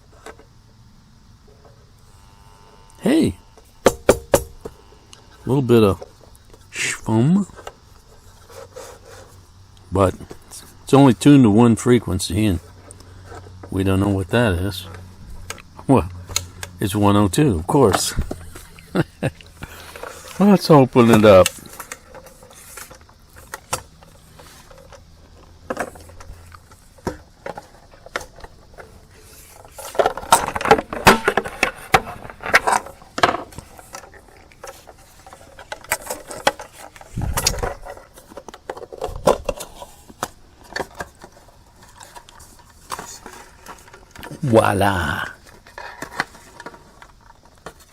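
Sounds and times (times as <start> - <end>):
plastic parts clicking and scraping: 7.4 - 9.4, 12.4 - 13.9, 14.6 - 16.9, 17.7 - 47.9.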